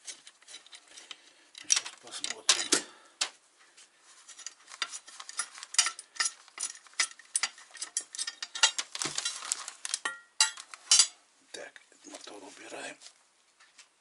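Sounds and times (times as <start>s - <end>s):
metal parts clicking and clinking: 0.0s - 2.9s, 4.3s - 11.2s.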